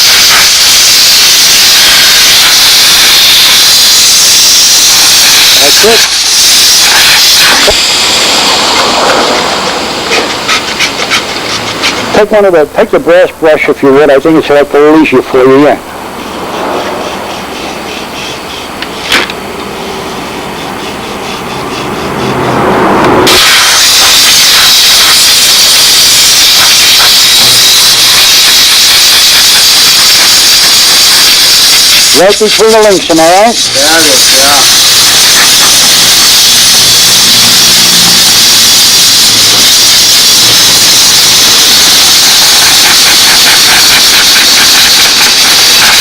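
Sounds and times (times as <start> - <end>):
steam cleaner jet hissing: 0.0 - 13.1, 14.3 - 46.0.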